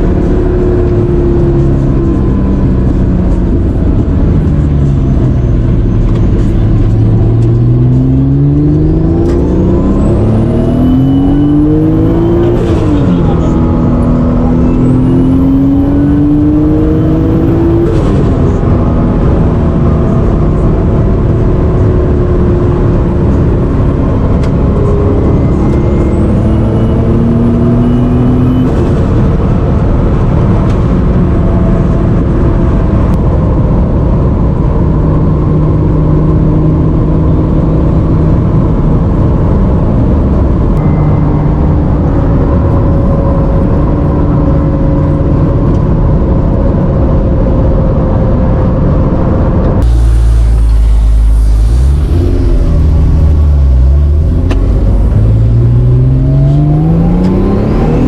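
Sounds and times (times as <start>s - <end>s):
car engine pulling hard: 0.0s - 58.0s
short rush of air: 49.8s - 54.3s
high turbo whistle: 49.8s - 55.5s.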